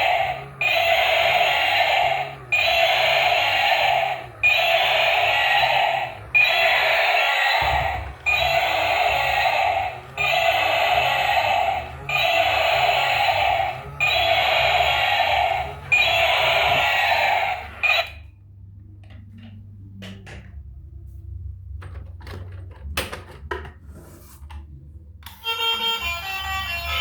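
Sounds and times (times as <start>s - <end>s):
toy vehicle electronic sound effect: 0.0s - 18.4s, 25.2s - 27.0s.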